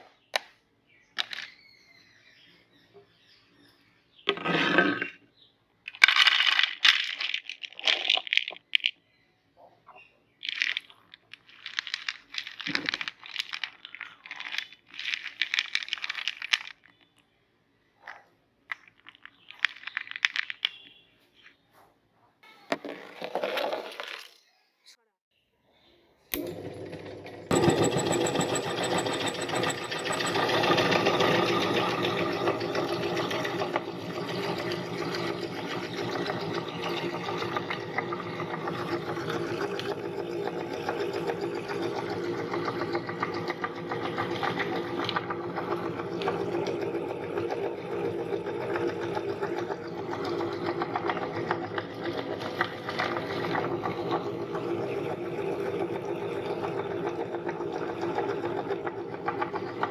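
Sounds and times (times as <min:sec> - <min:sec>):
electric meat grinder humming: 0:26.4 - 0:59.9.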